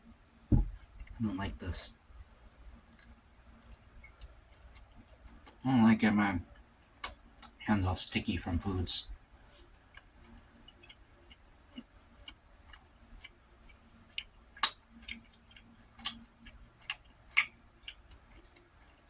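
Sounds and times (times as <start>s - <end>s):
faint steady hum: 0.0s - 19.0s
person eating with smacks: 2.9s - 5.6s, 9.9s - 19.0s.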